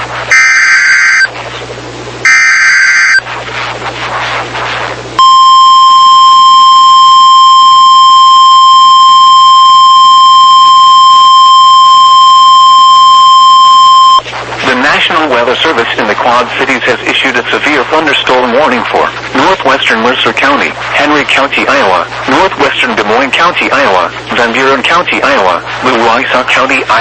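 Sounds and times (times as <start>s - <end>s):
harsh warbling data bursts: 0.0s - 1.3s, 2.2s - 5.4s
steady warning alarm tone: 0.3s - 1.3s, 2.2s - 3.2s, 5.2s - 14.2s
radio hiss: 2.6s - 9.2s, 13.8s - 27.0s.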